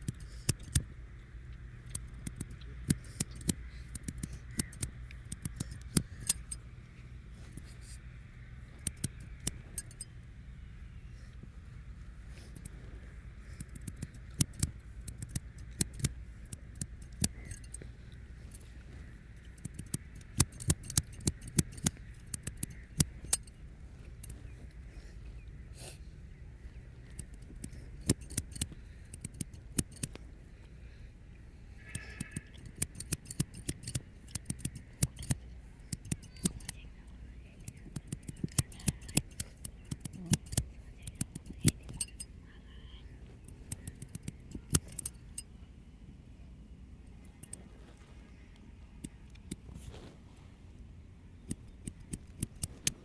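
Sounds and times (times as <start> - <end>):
scissors snipping: 0.0 - 0.8, 1.8 - 6.6, 8.8 - 10.1, 13.5 - 17.9, 19.4 - 23.5, 27.1 - 30.2, 31.9 - 36.8, 37.6 - 42.2, 43.4 - 45.4, 51.5 - 53.0
faint steady hum: 0.0 - 53.0.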